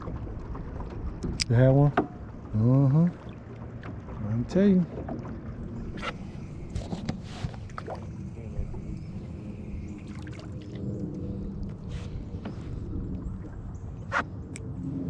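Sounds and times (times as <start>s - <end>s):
knocks from boat: 0.0s - 2.2s
boat motor humming: 0.0s - 15.0s
wind on microphone: 5.7s - 15.0s.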